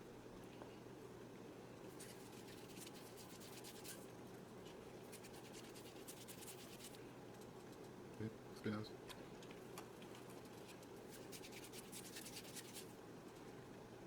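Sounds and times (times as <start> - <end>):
hands rolling dough: 1.9 - 7.9.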